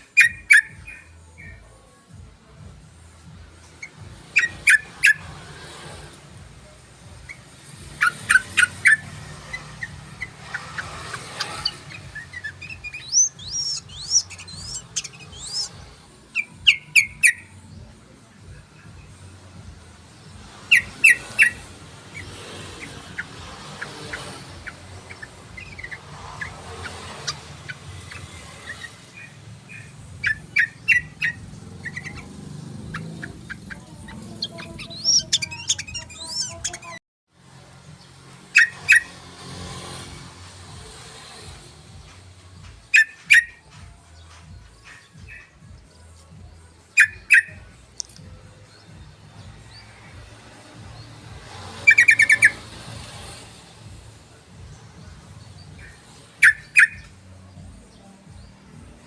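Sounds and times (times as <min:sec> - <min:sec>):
bird chirping song: 0:00.0 - 0:37.0, 0:37.8 - 0:59.0.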